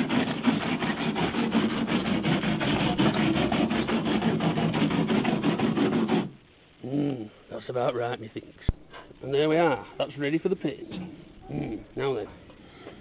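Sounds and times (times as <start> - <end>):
abrasive sanding of bodywork: 0.0 - 6.4.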